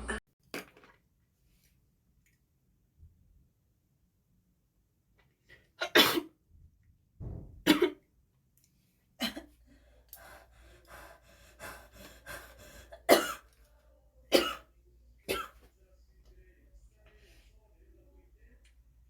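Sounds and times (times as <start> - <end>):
woman coughing: 5.8 - 6.3, 7.6 - 8.0, 9.2 - 9.6, 13.0 - 13.5, 14.3 - 14.7.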